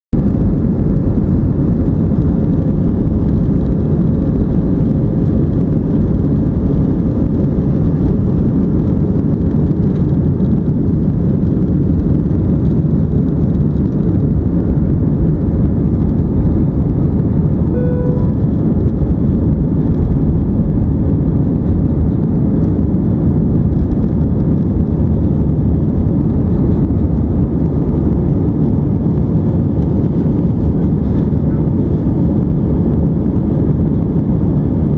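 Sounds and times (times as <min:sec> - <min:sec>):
airliner engine and airflow noise: 0:00.1 - 0:34.9
short beep: 0:17.7 - 0:18.4.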